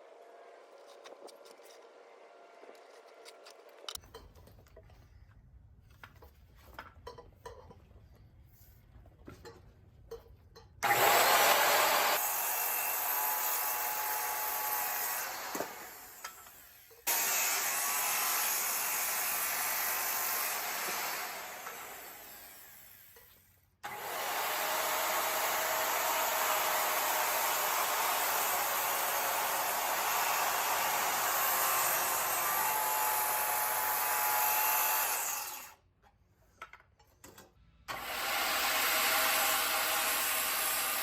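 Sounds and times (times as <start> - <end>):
circular saw cutting wood: 10.8 - 35.8, 37.9 - 41.0.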